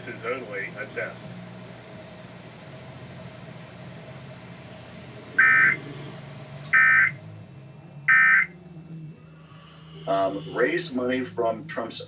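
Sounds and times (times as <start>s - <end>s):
buzzing data tone bursts: 5.4s - 5.8s, 6.7s - 7.2s, 8.1s - 8.5s.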